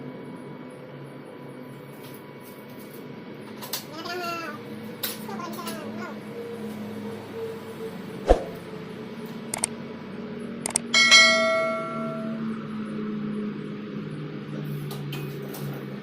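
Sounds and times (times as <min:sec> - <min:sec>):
steel struck ringing: 0:11.0 - 0:12.6.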